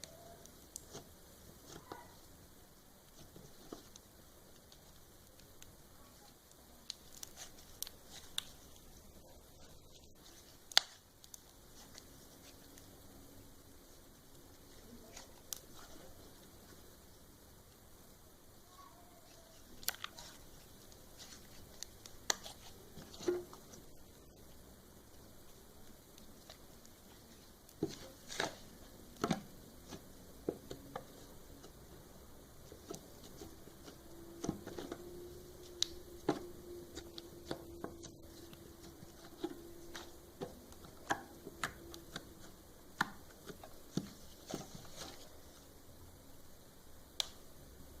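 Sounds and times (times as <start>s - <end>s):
faint low hum: 0.0s - 48.0s.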